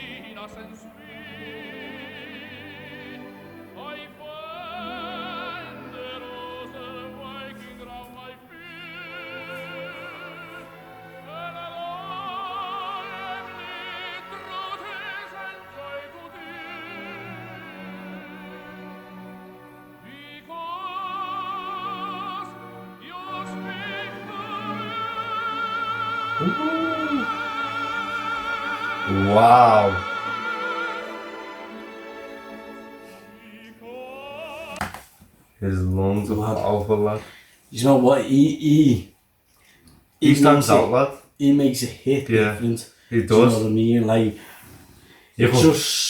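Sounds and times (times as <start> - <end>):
orchestra: 0.0 - 34.7
operatic tenor singing: 0.0 - 35.0, 40.2 - 44.3, 45.4 - 46.0.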